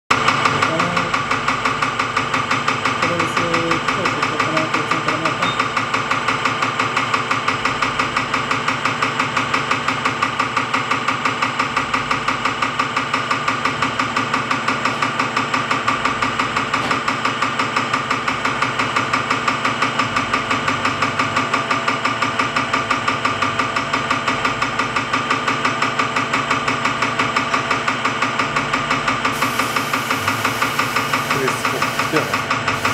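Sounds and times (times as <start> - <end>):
injector knocking rhythmically: 0.2 - 20.1, 28.6 - 32.9
machine hum: 29.2 - 32.9
high hiss: 29.4 - 32.9.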